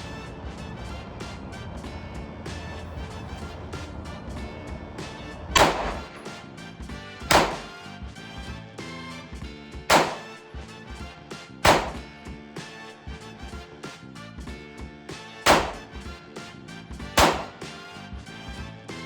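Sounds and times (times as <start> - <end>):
background music: 0.0 - 19.0
loud gunshots: 5.6 - 6.3, 7.3 - 7.8, 9.9 - 10.4, 11.6 - 12.1, 15.4 - 16.0, 17.2 - 17.8.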